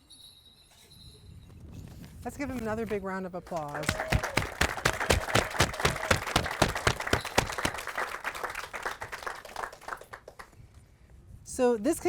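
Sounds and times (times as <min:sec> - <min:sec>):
audience applauding: 0:03.6 - 0:10.5.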